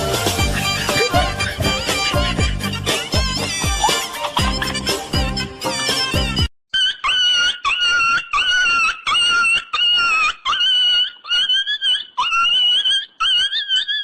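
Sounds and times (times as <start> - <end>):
high-pitched squealing tones: 0.0 - 6.3.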